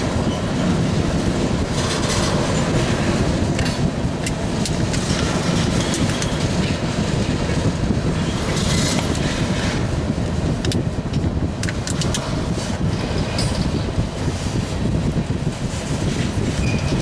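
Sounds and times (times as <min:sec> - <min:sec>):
freight train rumbling past: 0:00.0 - 0:17.0
wheels clanking on rails: 0:00.0 - 0:17.0.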